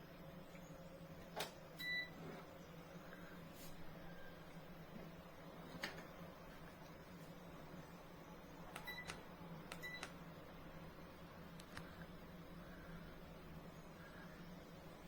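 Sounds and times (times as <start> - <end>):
faint steady hum: 0.0 - 15.0
clicks: 11.6 - 11.9.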